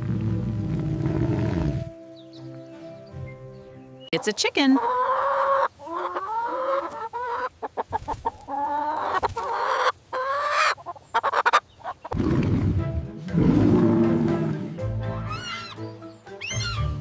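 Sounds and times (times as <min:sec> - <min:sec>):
chicken clucking and cackling: 0:04.2 - 0:12.2, 0:15.1 - 0:17.0.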